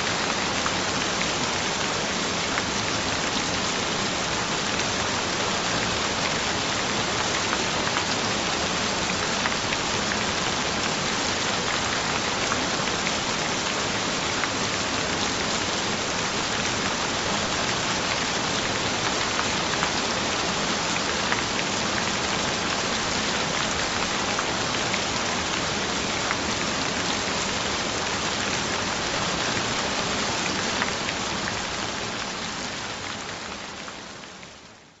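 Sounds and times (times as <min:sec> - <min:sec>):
steady rain falling: 0:00.0 - 0:35.0.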